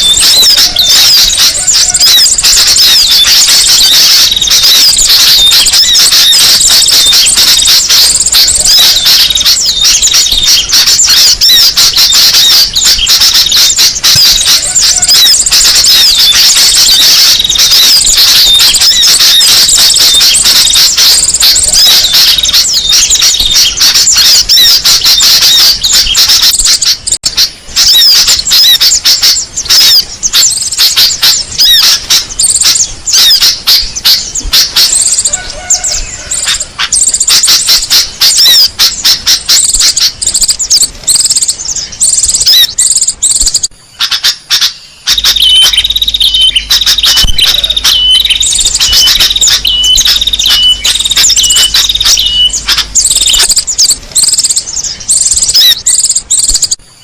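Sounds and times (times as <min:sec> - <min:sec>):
small birds chirping rapidly: 0:00.0 - 0:57.0.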